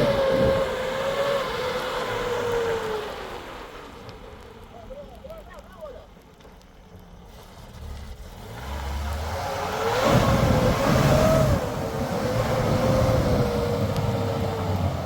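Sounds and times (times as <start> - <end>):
vehicle engine revving: 0.0 - 4.1, 7.3 - 15.0.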